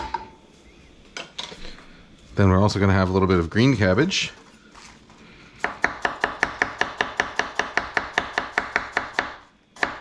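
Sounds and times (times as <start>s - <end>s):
knife chopping cabbage on board: 5.6s - 10.0s.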